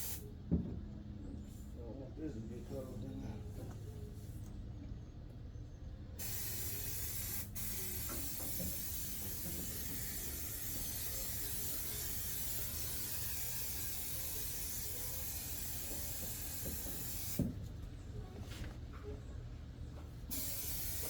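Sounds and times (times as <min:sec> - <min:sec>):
heat gun hissing: 0:20.3 - 0:21.0.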